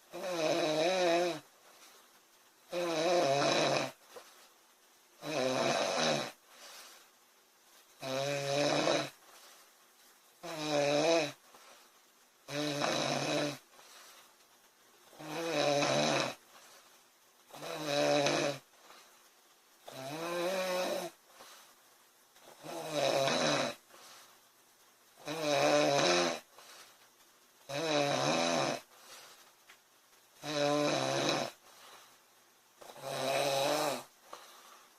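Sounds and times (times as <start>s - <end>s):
quiet breaths: 0.0s - 34.9s
woman snoring: 0.1s - 1.5s, 2.7s - 4.0s, 5.2s - 6.4s, 8.0s - 9.2s, 10.4s - 11.4s, 12.5s - 13.7s, 15.1s - 16.4s, 17.5s - 18.7s, 19.8s - 21.2s, 22.4s - 23.9s, 25.2s - 26.6s, 27.7s - 28.9s, 30.4s - 31.6s, 32.8s - 34.2s.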